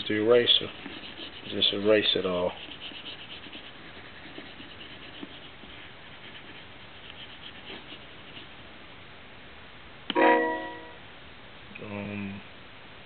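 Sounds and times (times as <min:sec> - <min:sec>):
stylus rubbing on touchscreen: 0:00.0 - 0:08.6
steady low hiss: 0:00.0 - 0:13.0.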